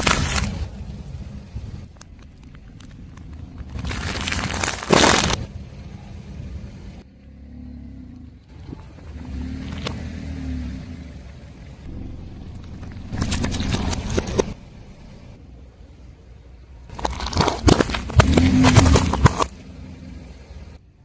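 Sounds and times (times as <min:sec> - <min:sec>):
car engine rumble: 0:00.0 - 0:21.0
tyre crushing object: 0:03.5 - 0:05.5, 0:12.6 - 0:14.6, 0:16.9 - 0:19.6.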